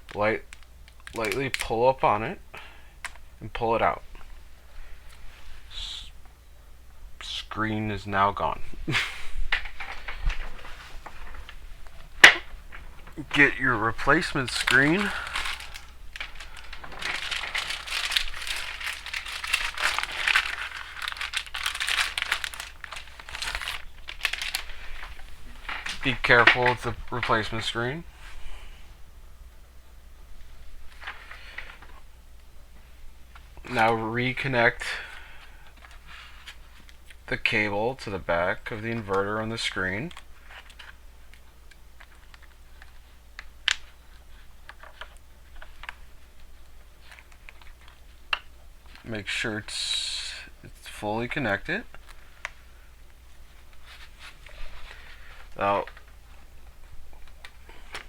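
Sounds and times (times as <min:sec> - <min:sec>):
plastic packaging crinkling: 0:00.0 - 0:02.0, 0:08.4 - 0:28.2, 0:38.2 - 0:49.6, 0:50.9 - 0:58.0.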